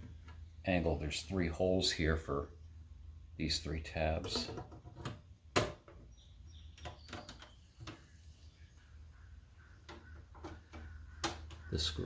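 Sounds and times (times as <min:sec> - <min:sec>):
light clicks and knocks: 0:09.8 - 0:11.7.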